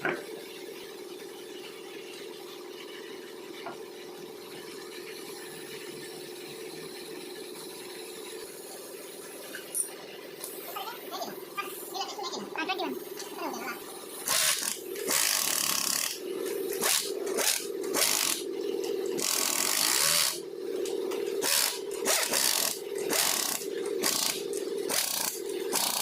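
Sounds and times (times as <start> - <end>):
power tool motor: 13.0 - 26.0.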